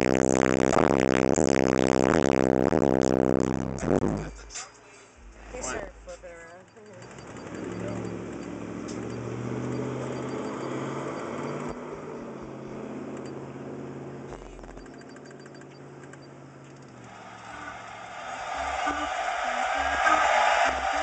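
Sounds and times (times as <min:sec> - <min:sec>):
bass-heavy song on subwoofers: 0:00.0 - 0:06.1, 0:11.6 - 0:12.9, 0:14.3 - 0:14.9, 0:17.1 - 0:21.0.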